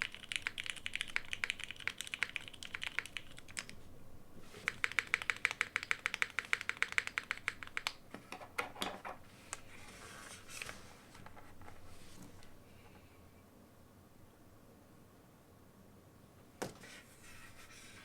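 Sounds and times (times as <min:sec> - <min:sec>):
mechanical keyboard typing: 0:00.0 - 0:03.8, 0:04.6 - 0:08.0.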